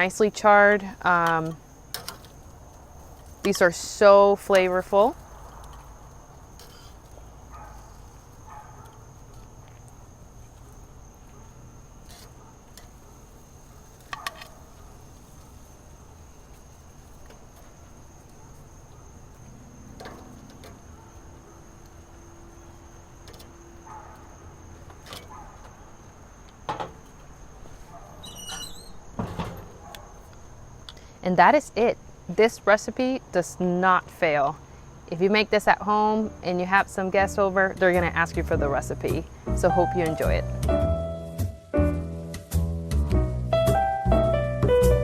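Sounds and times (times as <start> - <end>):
high-pitched insect trill: 0.0 - 33.8.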